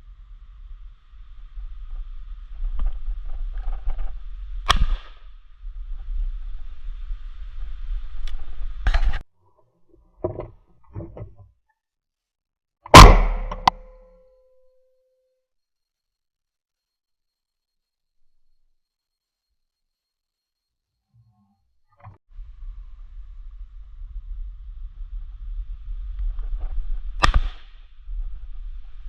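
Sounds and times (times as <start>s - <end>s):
shotgun shots: 12.9s - 13.9s, 27.2s - 27.7s
low rumble: 22.3s - 29.0s.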